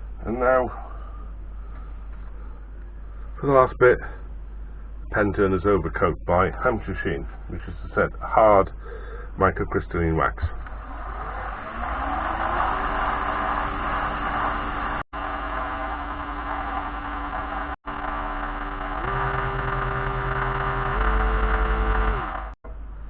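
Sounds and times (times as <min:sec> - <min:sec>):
wood lathe motor whine: 0:10.6 - 0:22.6.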